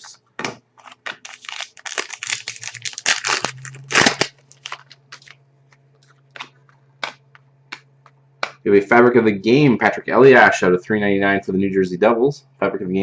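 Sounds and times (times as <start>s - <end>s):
wrapper crinkling: 0.8s - 5.4s.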